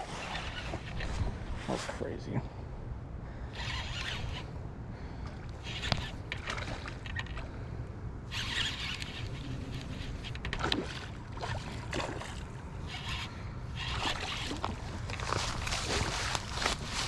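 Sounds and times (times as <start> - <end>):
water splashing and sloshing: 0.0 - 2.0, 5.1 - 7.7, 8.3 - 17.0
steady low rumble: 0.8 - 8.4
sharp clicks and rustles: 5.5 - 7.5.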